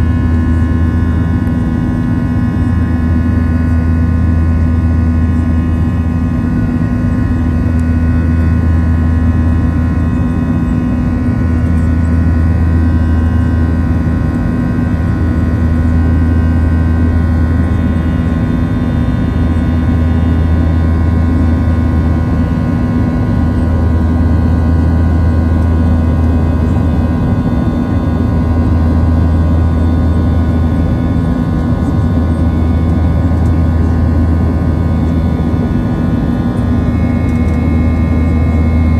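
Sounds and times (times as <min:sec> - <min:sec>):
jet engine cabin drone: 0:00.0 - 0:38.9.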